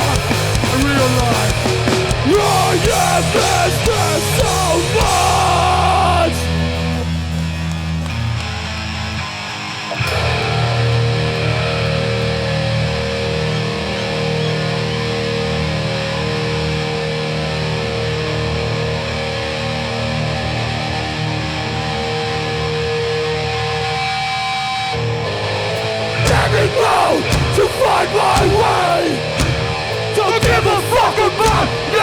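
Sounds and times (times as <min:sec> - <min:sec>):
punk band playing live: 0:00.0 - 0:14.1, 0:25.5 - 0:32.0
distorted electric guitar: 0:00.0 - 0:32.0.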